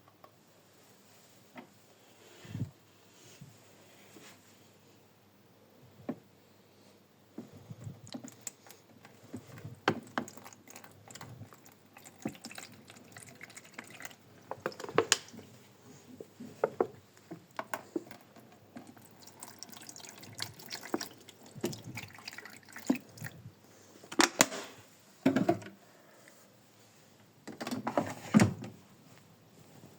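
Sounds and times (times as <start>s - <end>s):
water splashing and dripping: 9.9s - 15.4s, 18.9s - 23.4s.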